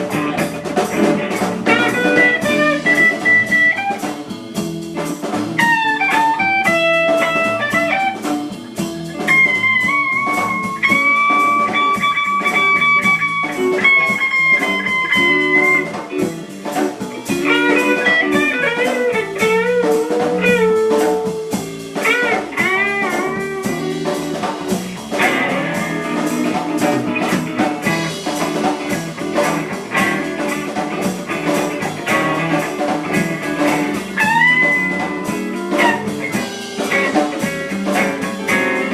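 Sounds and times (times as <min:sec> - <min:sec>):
band accompaniment: 0:00.0 - 0:38.9
blues lead guitar: 0:00.0 - 0:38.9.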